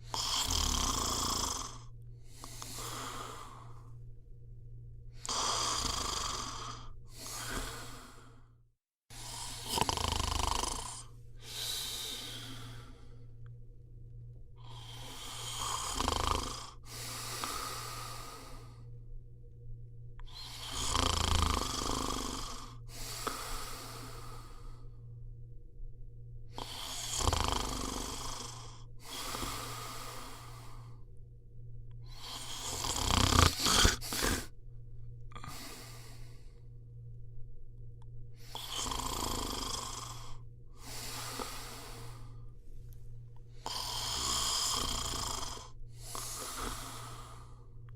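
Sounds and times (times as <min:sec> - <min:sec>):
person snoring: 0:00.0 - 0:04.0, 0:05.2 - 0:08.5, 0:09.1 - 0:13.4, 0:14.6 - 0:18.9, 0:20.2 - 0:25.0, 0:26.5 - 0:31.0, 0:32.0 - 0:34.6, 0:35.3 - 0:36.6, 0:38.4 - 0:42.5, 0:43.5 - 0:47.7
faint steady hum: 0:00.0 - 0:47.9.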